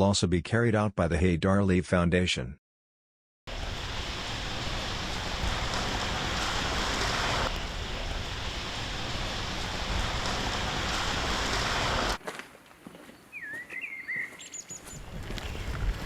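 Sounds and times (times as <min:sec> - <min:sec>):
wind on microphone: 0:14.9 - 0:16.0.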